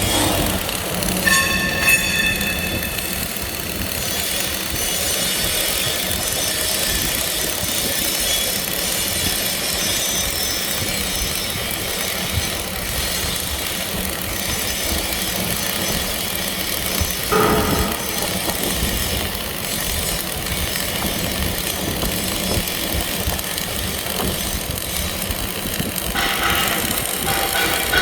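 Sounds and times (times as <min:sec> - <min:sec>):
welding arc crackling: 0:00.0 - 0:08.0, 0:11.3 - 0:28.0
short pitched tone: 0:01.2 - 0:03.5, 0:17.3 - 0:19.0.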